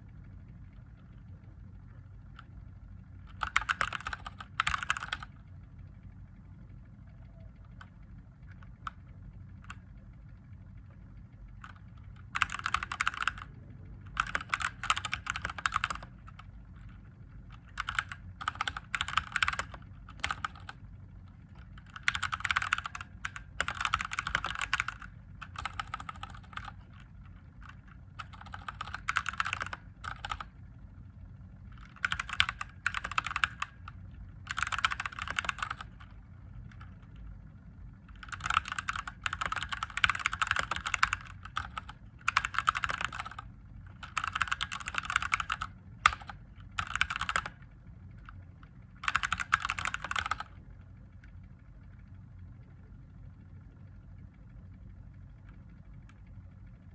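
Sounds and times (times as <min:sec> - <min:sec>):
steady low hum: 0:00.0 - 0:56.9
mechanical keyboard typing: 0:03.2 - 0:05.4, 0:11.5 - 0:30.6, 0:31.7 - 0:37.3, 0:38.1 - 0:48.4, 0:49.0 - 0:50.6.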